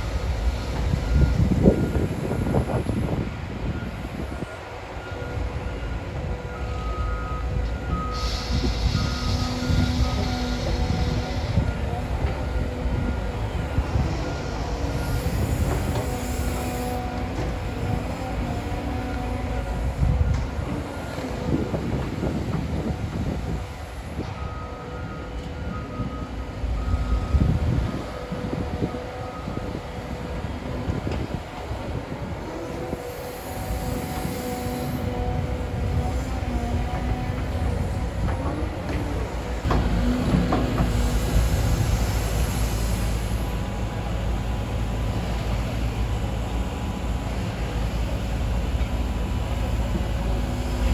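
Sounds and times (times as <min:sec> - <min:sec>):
excavator diesel rumble: 0:00.0 - 0:50.9
hiss: 0:08.0 - 0:11.7, 0:13.8 - 0:17.6, 0:32.7 - 0:35.1, 0:40.3 - 0:44.4.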